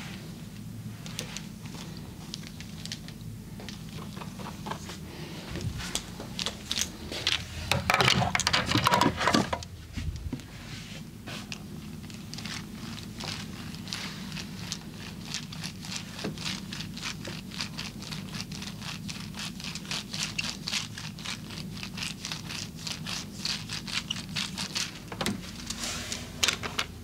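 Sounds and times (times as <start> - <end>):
hands rubbing skin: 9.9 - 26.3.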